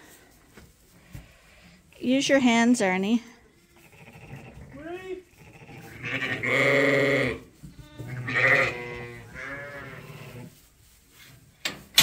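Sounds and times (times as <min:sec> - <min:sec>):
sheep bleating: 0:03.7 - 0:10.5.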